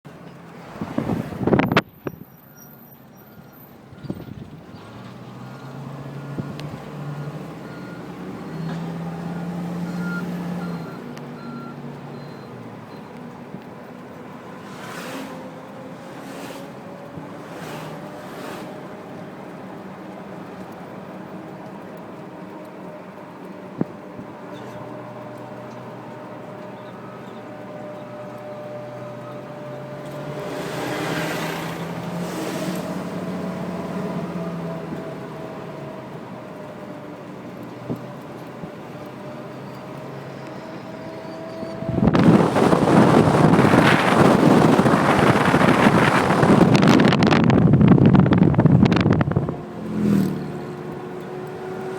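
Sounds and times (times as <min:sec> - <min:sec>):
heavy vehicle engine running: 0:00.1 - 0:51.9
reversing alarm beeping: 0:02.3 - 0:04.4, 0:07.2 - 0:13.2.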